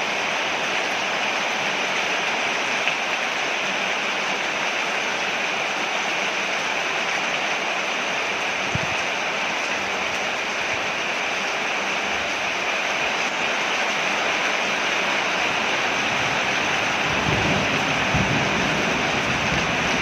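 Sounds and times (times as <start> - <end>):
heavy rain on a porch: 0.0 - 20.0.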